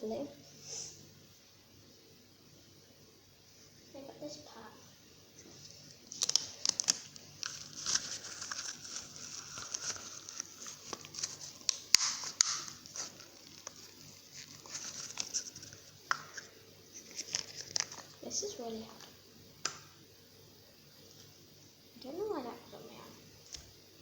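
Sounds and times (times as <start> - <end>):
crinkling and rustling materials: 5.3 - 19.2.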